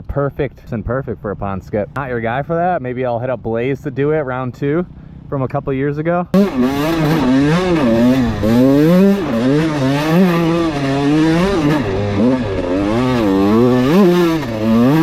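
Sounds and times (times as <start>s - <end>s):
dirt bike engine revving: 6.3s - 15.0s.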